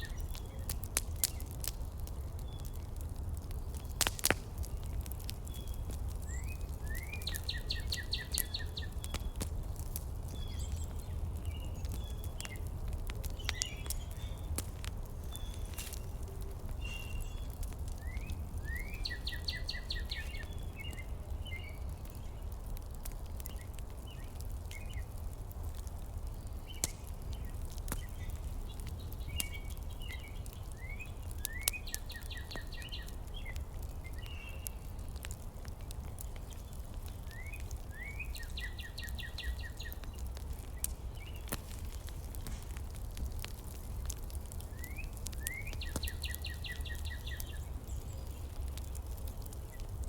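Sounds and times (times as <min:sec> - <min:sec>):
songbird chirps and trill: 0:05.5 - 0:09.3, 0:15.2 - 0:22.3, 0:44.7 - 0:49.0.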